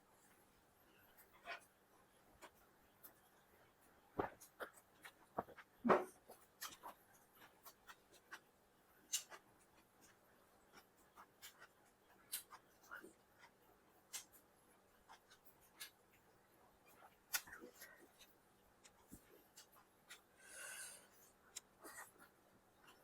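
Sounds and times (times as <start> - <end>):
eating clicks and smacks: 4.2 - 20.3.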